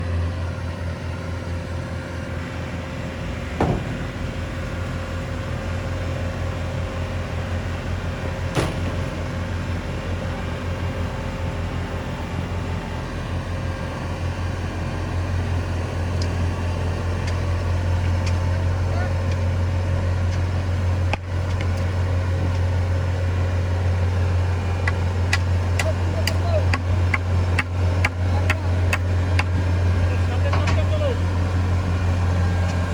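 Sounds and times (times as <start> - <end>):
engine running steadily: 0.0 - 32.9
sharp knocks: 3.4 - 5.0, 8.5 - 9.4.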